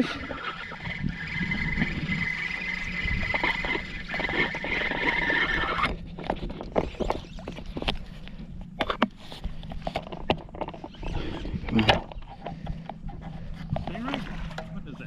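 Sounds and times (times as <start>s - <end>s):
fishing reel drag buzzing: 0.0s - 8.3s, 10.6s - 12.9s.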